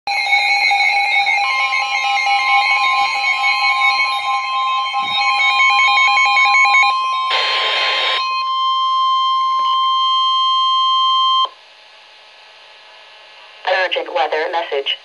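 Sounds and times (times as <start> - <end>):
radio hiss: 13.4 - 15.0.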